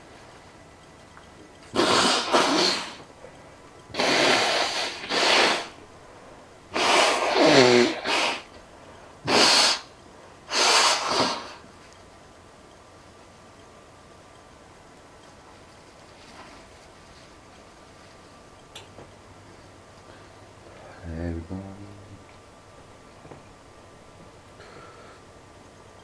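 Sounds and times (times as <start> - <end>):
person sneezing: 1.7 - 3.0, 4.0 - 5.8, 6.8 - 8.5, 9.3 - 9.9, 10.5 - 11.6
person blowing nose: 1.7 - 3.1, 3.9 - 5.8, 6.7 - 8.5, 9.2 - 9.9, 10.5 - 11.6.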